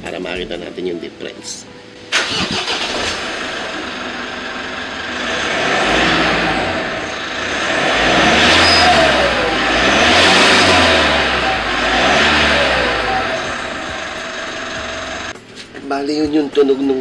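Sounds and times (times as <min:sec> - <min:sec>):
car engine revving: 0:02.1 - 0:15.3.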